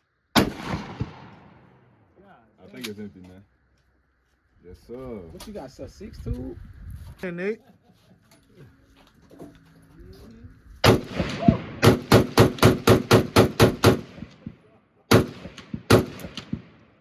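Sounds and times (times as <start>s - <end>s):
gunshots: 0.4s - 1.9s, 10.8s - 17.0s.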